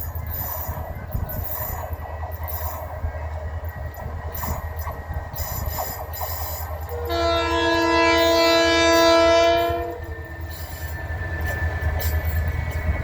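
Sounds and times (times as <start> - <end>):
train rumble: 0.0 - 13.0
train wheel clatter: 0.0 - 13.0
locomotive horn blast: 6.9 - 10.1.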